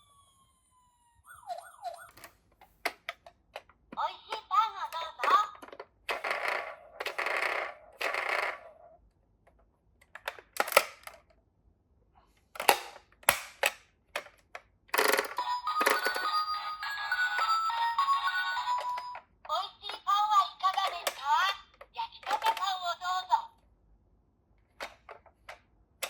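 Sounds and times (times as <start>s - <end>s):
electronic ringtone melody: 1.3s - 2.2s, 15.4s - 19.2s.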